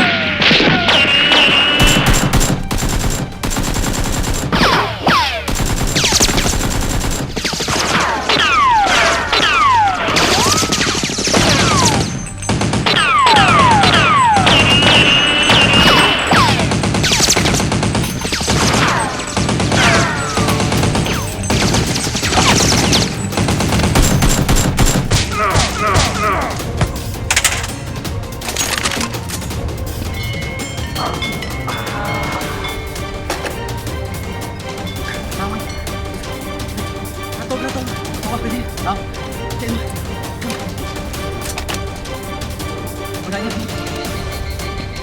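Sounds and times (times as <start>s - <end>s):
gunfire sound effects: 0.0s - 26.5s
background music: 0.0s - 45.0s
automatic gunfire bursts: 1.5s - 8.6s.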